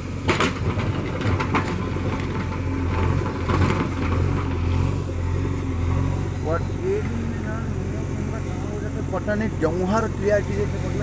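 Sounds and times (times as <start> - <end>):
diesel engine running: 0.0 - 11.0
metallic clanks and knocks: 0.2 - 4.7.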